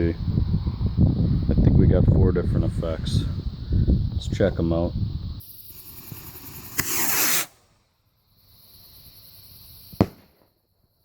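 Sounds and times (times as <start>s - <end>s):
firework rocket hissing: 5.3s - 7.8s, 8.6s - 10.5s
rocket rushing whoosh: 5.7s - 7.7s.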